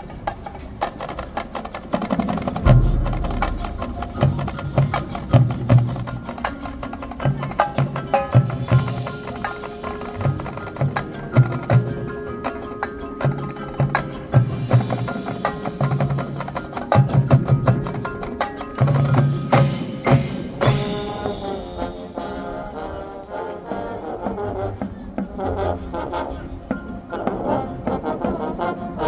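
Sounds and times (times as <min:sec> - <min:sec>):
marching band playing: 0:00.0 - 0:29.0
cymbal crash: 0:02.6 - 0:06.2, 0:19.6 - 0:22.6.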